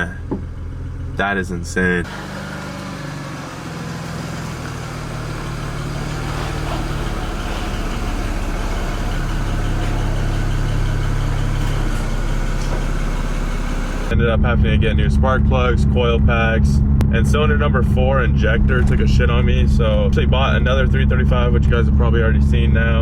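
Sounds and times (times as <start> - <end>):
car engine idling: 0.0 - 23.0.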